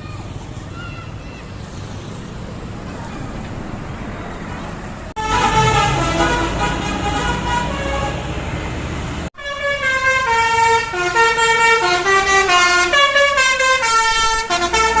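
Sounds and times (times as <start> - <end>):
bus air horns playing a tune: 5.2 - 15.0.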